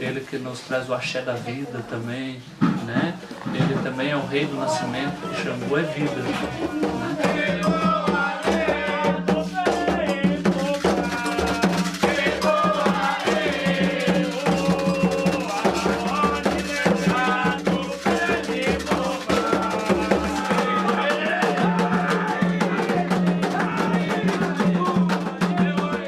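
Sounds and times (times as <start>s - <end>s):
voices singing: 0.0s - 26.0s
hand drums beating: 2.6s - 26.0s
shaken rattle: 10.6s - 20.8s.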